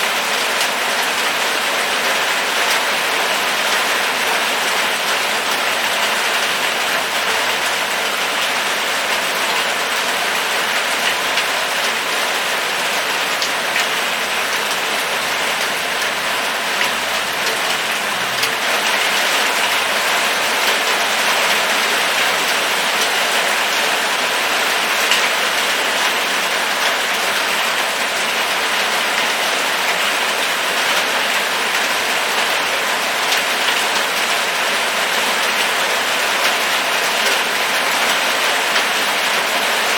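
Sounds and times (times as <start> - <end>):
rain falling: 0.0 - 39.9
raindrops ticking: 3.6 - 23.8.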